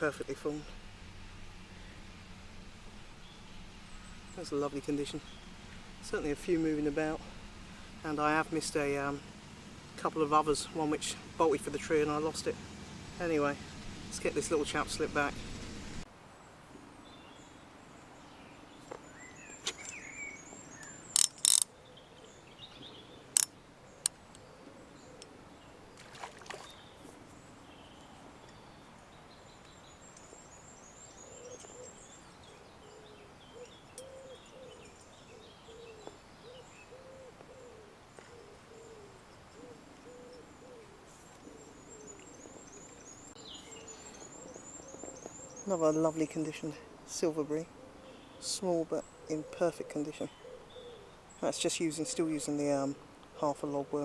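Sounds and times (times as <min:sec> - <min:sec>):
low hooting bird call: 0:00.0 - 0:16.0, 0:30.2 - 0:54.0
birds twittering: 0:00.0 - 0:54.0.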